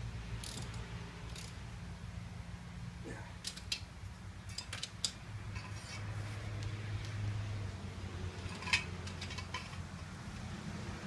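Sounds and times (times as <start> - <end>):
metallic clicks of hand tools: 0.4 - 1.6, 3.4 - 3.9, 4.5 - 5.7.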